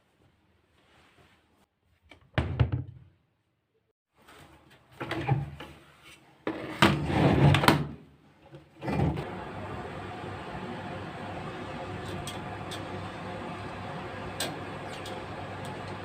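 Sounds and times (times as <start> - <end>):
cabinets knocking and clattering: 2.3 - 3.1.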